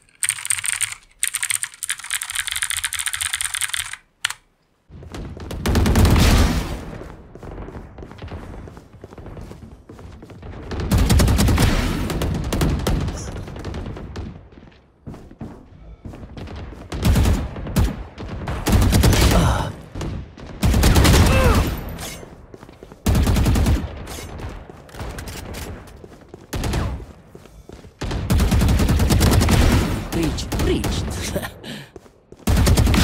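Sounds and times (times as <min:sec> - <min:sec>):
video game automatic gunfire: 0:05.1 - 0:14.6, 0:16.4 - 0:21.5, 0:23.0 - 0:27.2, 0:28.0 - 0:31.4, 0:32.4 - 0:33.0.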